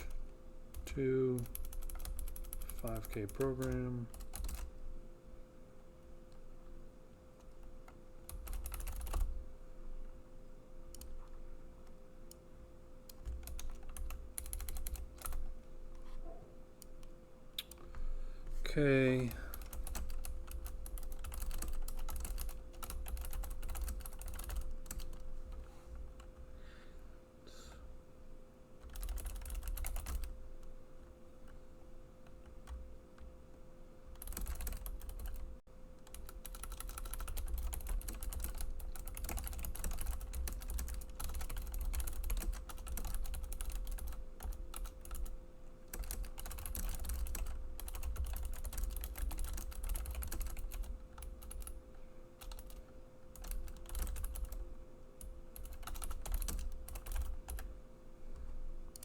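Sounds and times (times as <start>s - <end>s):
rapid typing on keyboard: 0.0s - 4.8s, 7.4s - 9.4s, 10.9s - 11.4s, 13.1s - 15.6s, 19.2s - 26.4s, 28.8s - 30.4s, 34.1s - 51.8s, 52.4s - 54.6s, 55.2s - 57.7s
steady faint hum: 0.0s - 59.0s.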